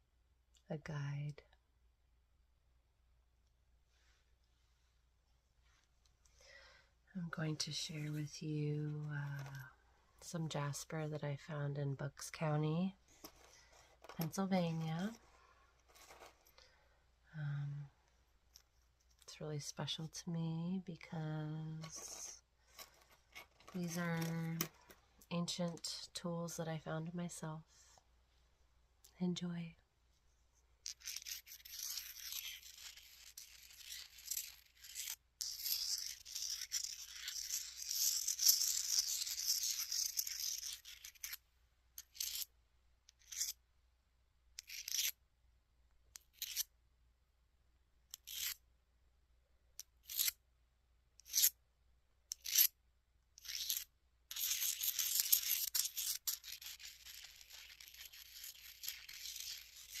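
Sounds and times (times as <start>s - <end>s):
stone tools rubbing: 21.8s - 24.9s, 30.8s - 41.4s, 42.0s - 42.5s, 43.1s - 43.6s, 44.6s - 45.1s, 46.3s - 46.7s, 48.2s - 48.6s, 50.0s - 50.3s, 51.2s - 51.5s, 52.3s - 52.7s, 53.4s - 60.0s.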